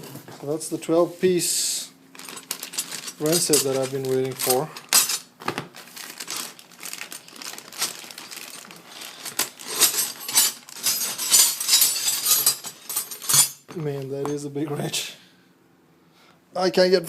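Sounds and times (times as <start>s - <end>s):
packaging crinkling: 2.1s - 10.9s.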